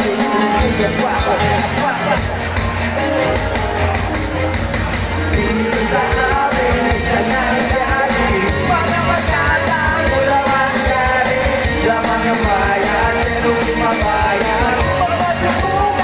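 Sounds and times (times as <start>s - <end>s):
person singing along: 0.0s - 2.4s, 5.3s - 16.0s
rock backing track: 0.0s - 16.0s.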